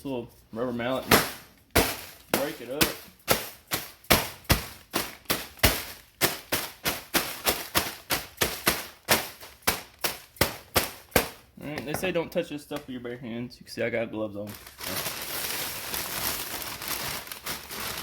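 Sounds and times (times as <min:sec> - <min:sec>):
rubber mallet striking dry ice: 0:01.1 - 0:11.4.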